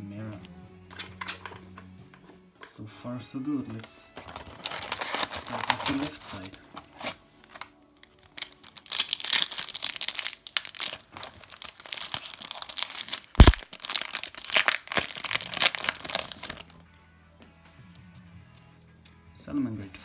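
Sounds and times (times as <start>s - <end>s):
foil wrapper crinkling: 4.2s - 16.8s.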